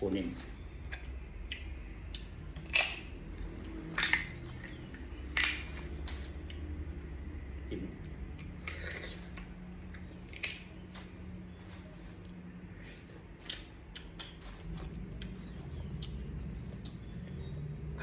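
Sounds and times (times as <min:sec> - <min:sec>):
crab shell crunching: 0:02.1 - 0:06.6.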